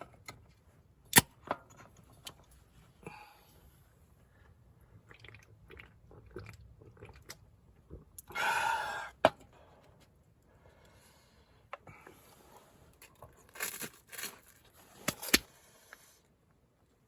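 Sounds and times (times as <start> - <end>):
chewing crunchy food: 5.0 - 8.3.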